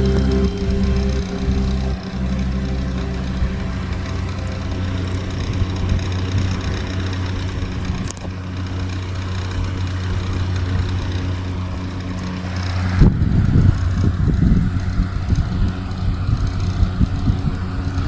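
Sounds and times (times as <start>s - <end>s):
uneven low rumble: 0.0s - 8.4s.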